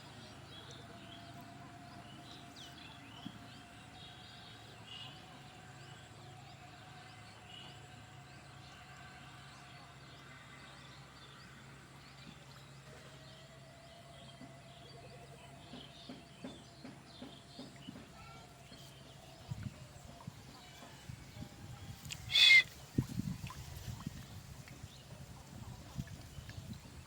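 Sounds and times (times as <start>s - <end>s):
birds chirping and calling: 22.0s - 23.4s.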